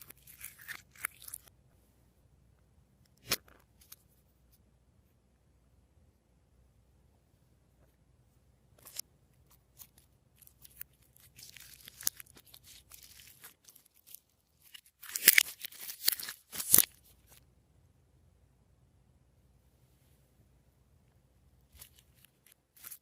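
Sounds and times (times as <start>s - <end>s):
slime clicking and crackling: 9.8s - 16.9s.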